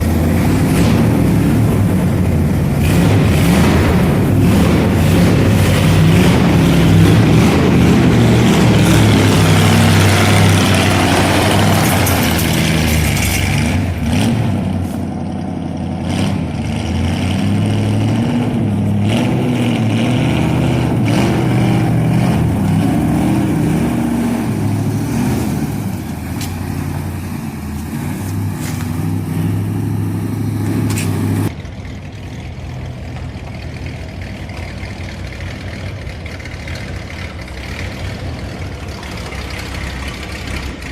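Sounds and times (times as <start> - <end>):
car engine revving and idling: 0.0 - 40.9.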